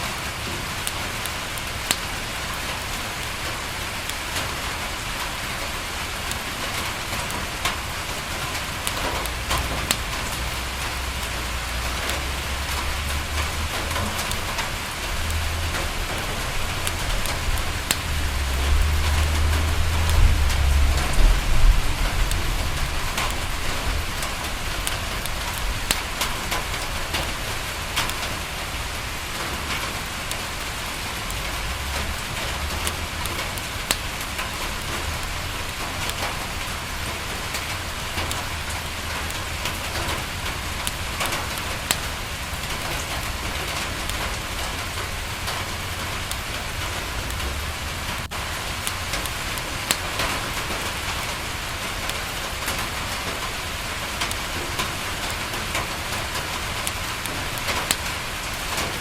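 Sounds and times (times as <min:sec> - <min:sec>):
rain on a window: 0:00.0 - 0:59.0
fireplace crackling: 0:00.1 - 0:59.0
low rumble: 0:14.6 - 0:24.8.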